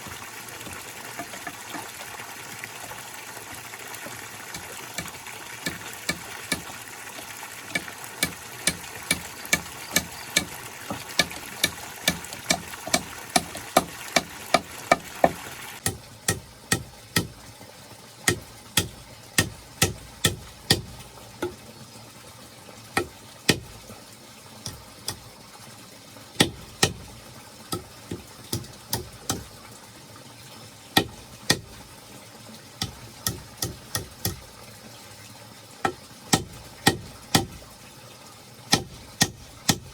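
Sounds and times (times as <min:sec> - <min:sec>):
hard tool strikes: 0:07.8 - 0:17.3, 0:18.3 - 0:21.6, 0:26.4 - 0:27.1, 0:32.8 - 0:34.4, 0:35.9 - 0:37.6, 0:38.7 - 0:39.9.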